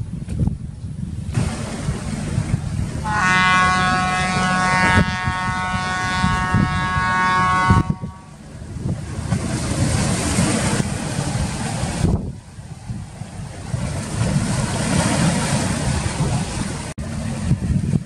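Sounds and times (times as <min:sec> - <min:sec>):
low rumble: 0:00.0 - 0:14.8
wind noise on microphone: 0:00.0 - 0:18.0
horn long blast: 0:01.4 - 0:08.4.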